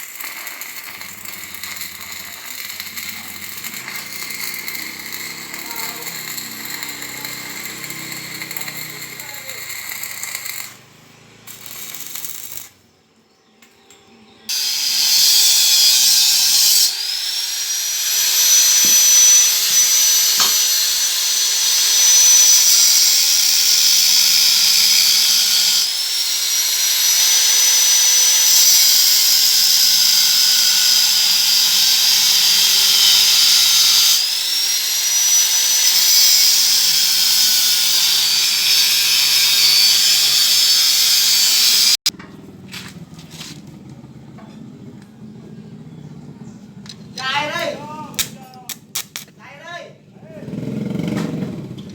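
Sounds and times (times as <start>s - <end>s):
circular saw running: 0.2s - 12.6s, 14.5s - 42.1s.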